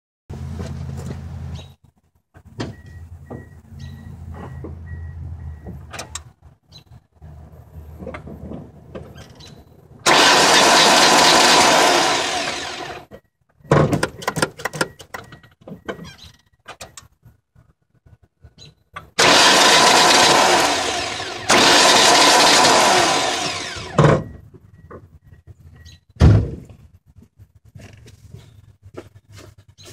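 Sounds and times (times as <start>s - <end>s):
starter motor cranking engine: 10.1s - 13.1s, 19.2s - 24.2s.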